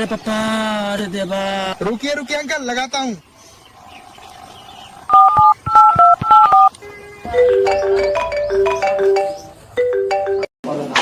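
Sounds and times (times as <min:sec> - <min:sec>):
melodic ringback tune: 0:05.1 - 0:06.7, 0:07.3 - 0:10.5
phone keypad beeps: 0:05.1 - 0:06.7.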